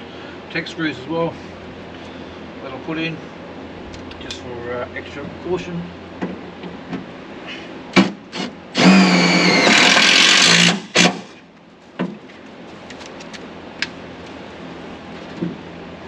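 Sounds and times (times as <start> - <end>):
power drill driving screw into metal: 8.3 - 11.3.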